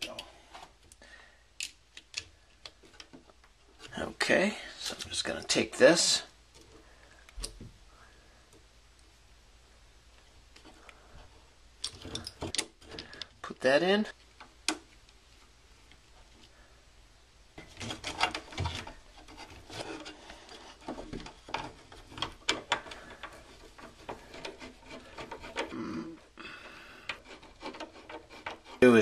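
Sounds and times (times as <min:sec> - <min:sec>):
rubbing and scraping: 0:17.6 - 0:29.0.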